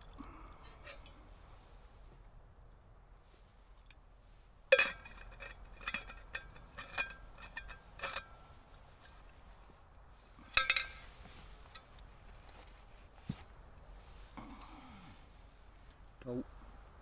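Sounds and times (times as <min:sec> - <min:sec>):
metal cookware clinking: 0:04.8 - 0:08.4, 0:10.6 - 0:11.1.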